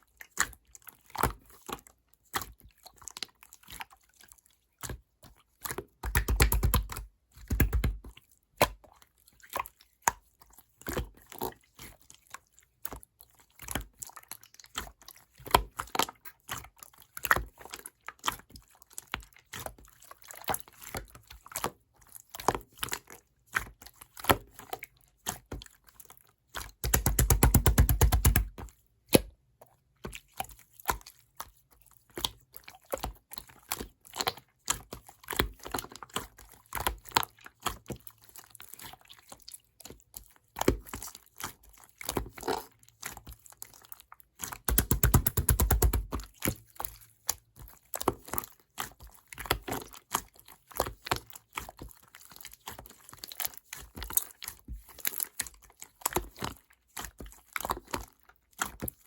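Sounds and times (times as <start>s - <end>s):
slime squished by hand: 5.7s - 8.8s, 26.5s - 29.4s, 44.3s - 46.7s
rapid crackling of slime: 5.9s - 8.8s, 22.3s - 28.8s, 40.0s - 59.0s.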